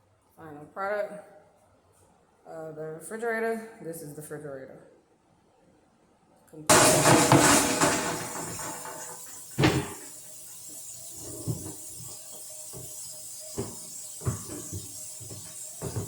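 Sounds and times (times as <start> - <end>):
knocks of refrigerator shelf: 6.7 - 10.2.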